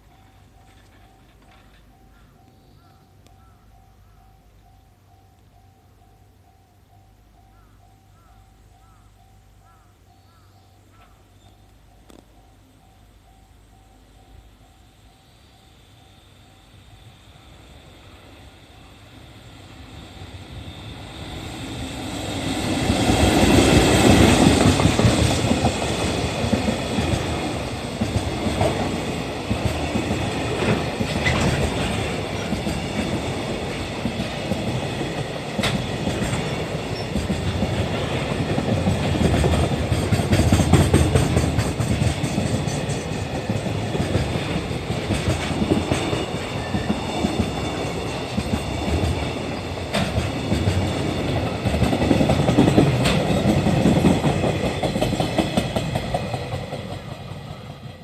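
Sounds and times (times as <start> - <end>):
wheels clacking over rail joints: 0.0 - 2.3, 21.2 - 58.0
freight train passing: 0.0 - 58.0.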